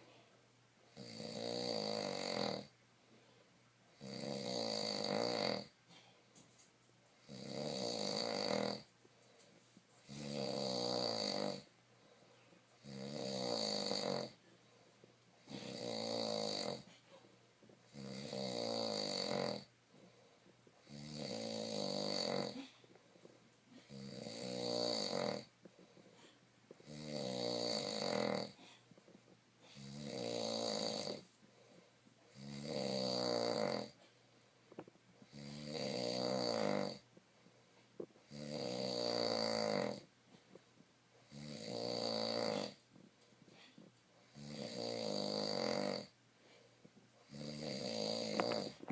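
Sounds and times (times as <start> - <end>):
person snoring: 0.9 - 2.7, 3.9 - 5.8, 7.2 - 8.9, 10.0 - 11.7, 12.8 - 14.4, 15.4 - 16.9, 17.9 - 20.1, 20.8 - 22.8, 23.7 - 26.0, 26.8 - 28.8, 29.7 - 31.3, 32.3 - 34.0, 35.2 - 37.1, 38.2 - 40.1, 41.2 - 42.8, 43.6 - 46.2, 47.2 - 48.9.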